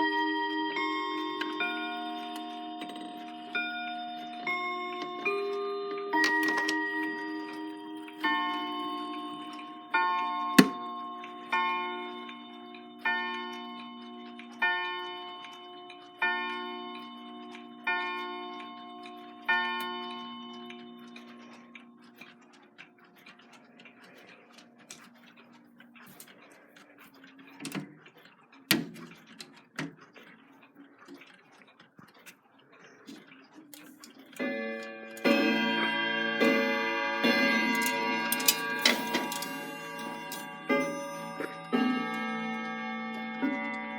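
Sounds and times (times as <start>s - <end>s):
clock chiming strokes: 0.0s - 22.0s, 34.3s - 43.9s
dense many-toned clock chime: 0.0s - 22.2s, 34.3s - 43.9s
clock ticking: 0.0s - 43.9s.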